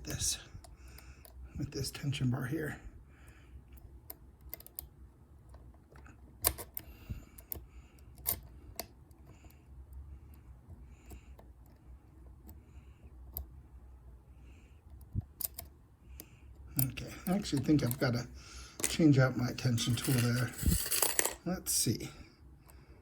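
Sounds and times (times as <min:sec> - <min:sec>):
lock pick clicking in keyway: 0:04.1 - 0:04.9, 0:05.5 - 0:09.3, 0:14.9 - 0:15.7.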